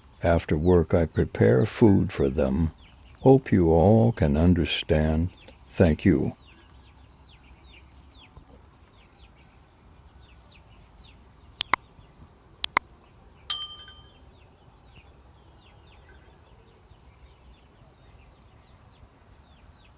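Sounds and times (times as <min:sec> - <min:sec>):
chicks chirping: 0:00.5 - 0:12.1
sharp clicks: 0:11.6 - 0:11.8, 0:12.6 - 0:12.8
metallic ding: 0:13.5 - 0:14.2.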